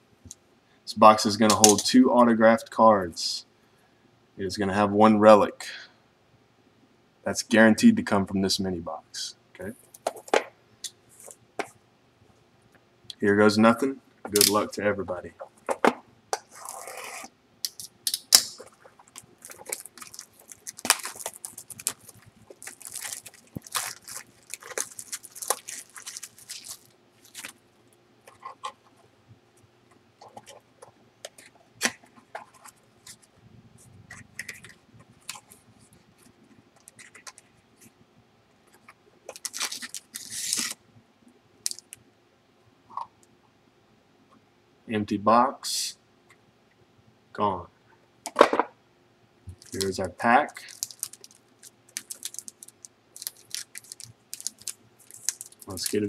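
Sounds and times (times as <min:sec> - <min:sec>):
plastic shrink wrap crinkling: 0:16.4 - 0:17.8, 0:18.4 - 0:28.8, 0:34.1 - 0:37.9, 0:38.8 - 0:40.8, 0:41.6 - 0:42.0, 0:49.5 - 0:56.0.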